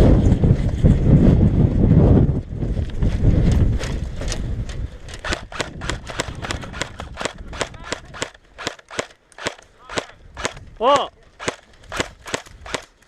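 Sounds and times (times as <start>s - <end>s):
camera jostling: 2.8s - 10.7s, 11.4s - 13.0s
airsoft guns firing: 5.1s - 13.0s.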